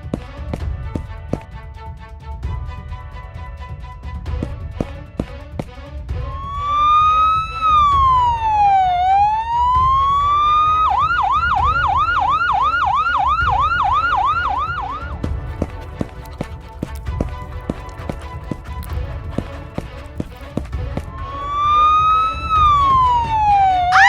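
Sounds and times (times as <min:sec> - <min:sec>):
background music with beat: 0:00.0 - 0:24.0
police siren wailing and yelping: 0:06.3 - 0:15.1, 0:21.3 - 0:24.0.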